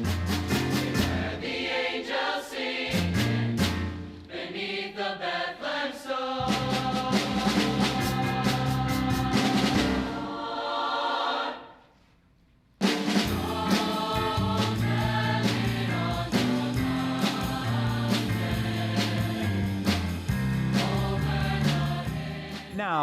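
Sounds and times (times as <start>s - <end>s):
choral music with percussive hits: 0.0s - 22.8s
choir holding a chord: 0.8s - 3.0s, 4.3s - 11.8s, 13.3s - 19.6s, 20.6s - 22.7s.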